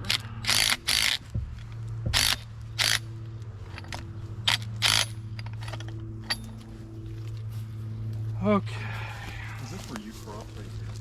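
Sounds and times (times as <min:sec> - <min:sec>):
sharp handling noises: 0:00.0 - 0:07.5.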